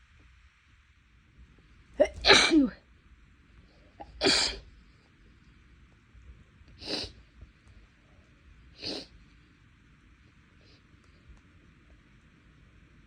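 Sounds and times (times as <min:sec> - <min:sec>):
breathy sneeze: 0:02.0 - 0:02.8, 0:04.2 - 0:04.6
nose sniffs: 0:06.8 - 0:07.2, 0:08.8 - 0:09.1.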